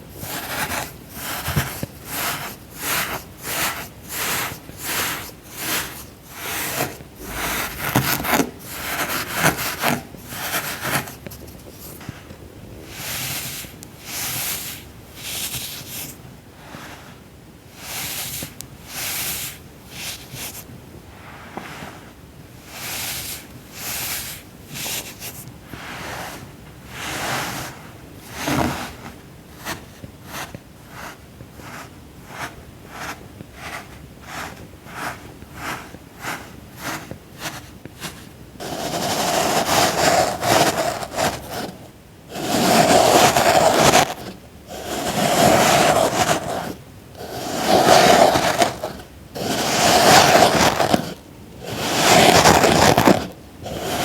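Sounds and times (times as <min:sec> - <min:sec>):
tool cutting through packed sand: 0:00.2 - 0:11.1, 0:33.7 - 0:54.0.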